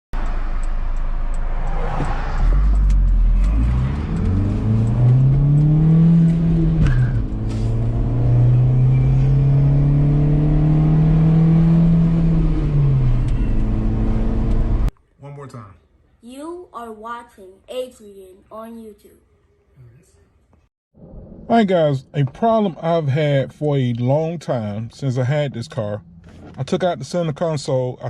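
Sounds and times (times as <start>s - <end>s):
car engine accelerating: 0.2s - 14.9s, 21.2s - 28.0s.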